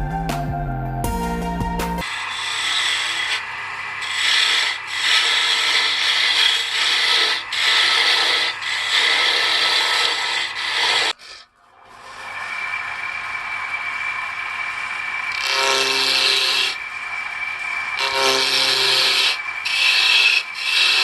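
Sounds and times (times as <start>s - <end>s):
scroll saw rasping through wood: 2.0s - 12.5s, 15.3s - 21.0s
low motor hum: 11.6s - 21.0s.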